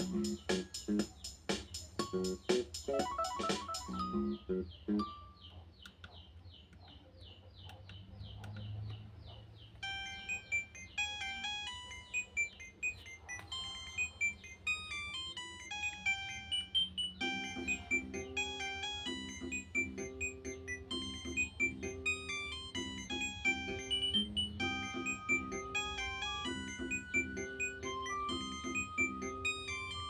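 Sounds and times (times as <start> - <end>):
synthesized beeping melody: 2.1 - 5.2, 9.8 - 30.0
high ringtone chirps: 2.1 - 5.4, 9.8 - 30.0.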